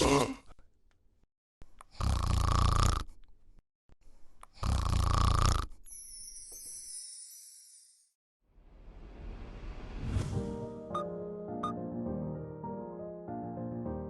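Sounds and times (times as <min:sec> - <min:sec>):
person snoring: 0:01.9 - 0:03.1, 0:04.5 - 0:05.8.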